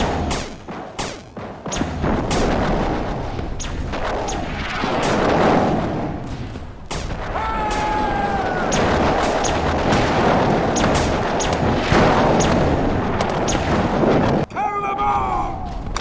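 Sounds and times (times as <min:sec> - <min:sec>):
laser blaster shots: 0:00.0 - 0:14.4
rumbling blast: 0:01.8 - 0:14.5.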